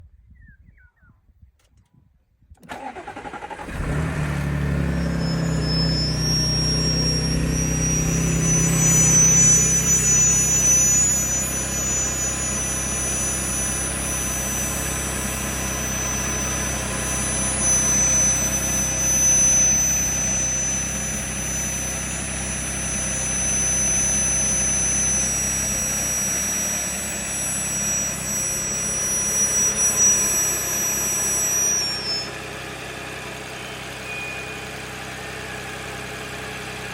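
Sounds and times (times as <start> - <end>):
car engine starting and idling: 2.6 - 36.9
high thin whine: 4.7 - 32.4.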